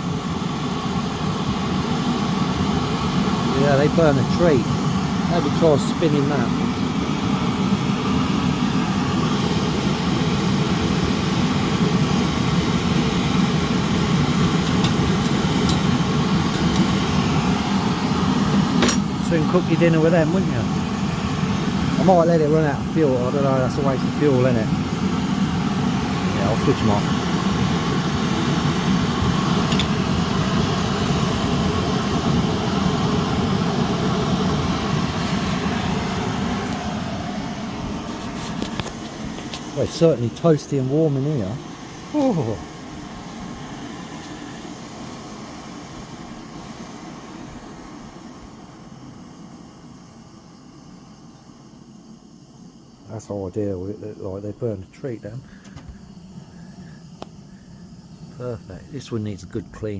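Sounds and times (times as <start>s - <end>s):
burner stoves hissing: 0.0s - 59.9s.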